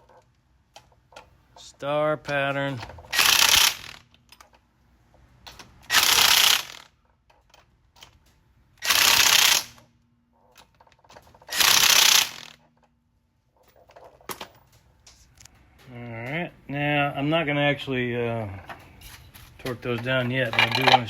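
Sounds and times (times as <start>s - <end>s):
impact wrench bursts: 2.8s - 4.3s, 5.5s - 7.0s, 8.8s - 9.9s, 11.4s - 12.7s.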